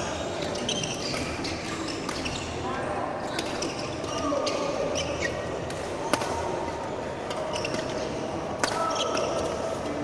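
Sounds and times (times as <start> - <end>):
shoes squeaking on court: 0.4 - 2.6, 7.4 - 8.2
racket striking shuttlecock: 8.6 - 9.0.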